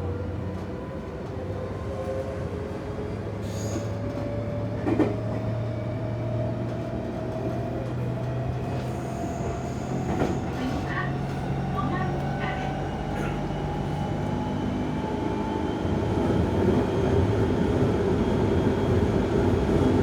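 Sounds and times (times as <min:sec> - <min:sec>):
train cabin running hum: 0:00.0 - 0:20.0.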